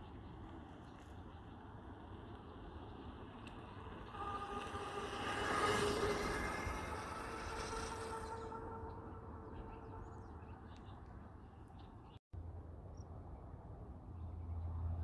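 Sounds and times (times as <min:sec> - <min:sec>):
vehicle passing by: 0:03.6 - 0:10.5.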